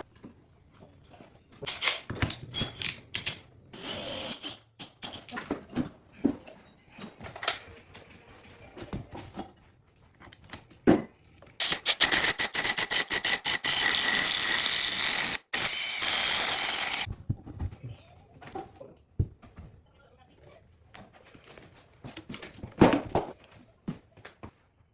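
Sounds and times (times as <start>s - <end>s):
power tool running: 11.6s - 17.1s.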